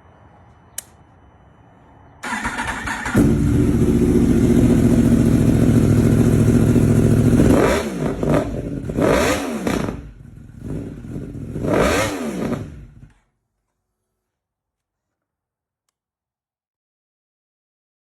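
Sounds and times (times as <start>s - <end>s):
motorcycle exhaust revving: 2.3s - 13.1s.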